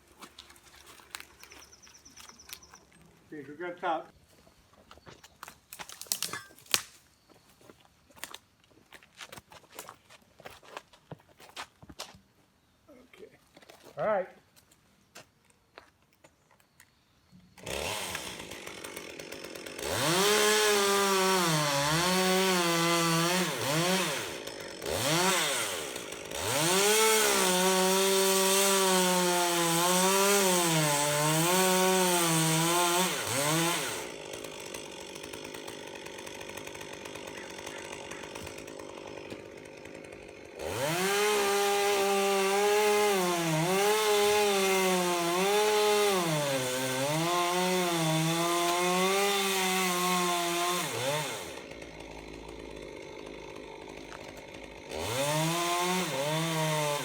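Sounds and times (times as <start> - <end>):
chainsaw cutting wood: 5.4 - 7.0, 17.5 - 57.0.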